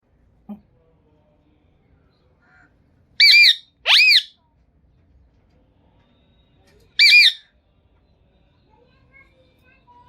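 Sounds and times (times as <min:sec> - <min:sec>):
parakeet high calls: 0:03.2 - 0:04.4, 0:07.0 - 0:07.5.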